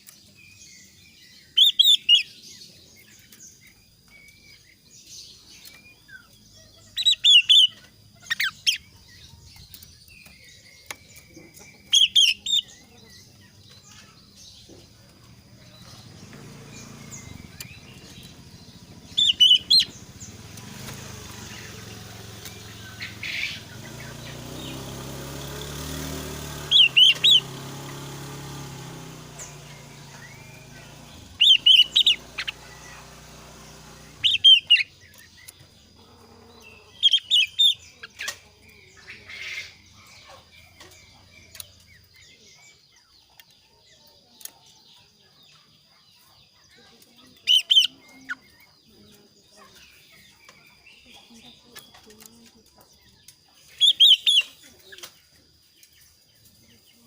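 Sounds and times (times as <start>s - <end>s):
faint bird chirps: 0.0s - 57.0s
bird calling high notes: 16.8s - 20.3s, 29.5s - 35.0s.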